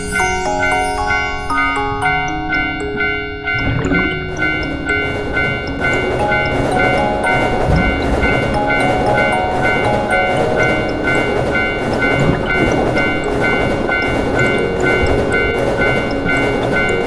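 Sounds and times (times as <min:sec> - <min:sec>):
crossing warning bell ringing: 0:00.0 - 0:17.0
music: 0:00.0 - 0:17.0
passing train rumble and clatter: 0:03.5 - 0:17.0.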